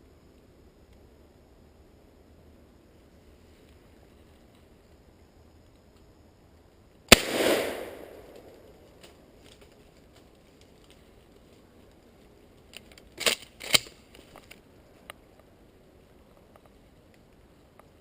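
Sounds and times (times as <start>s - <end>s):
shotgun shot echoing: 7.1s - 8.7s.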